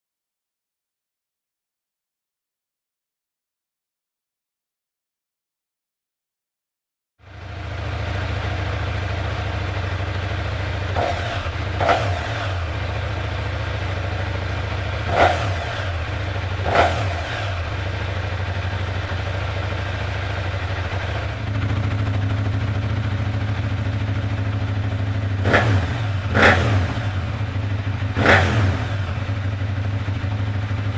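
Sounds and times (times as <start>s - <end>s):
motorcycle engine idling: 7.2s - 30.9s
motorcycle throttle blips: 7.3s - 30.9s.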